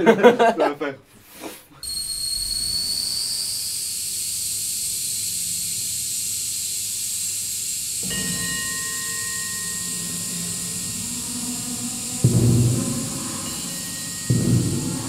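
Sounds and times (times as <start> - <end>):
faint whistle: 1.8 - 6.7
high-pitched gas jet hiss: 1.8 - 15.0.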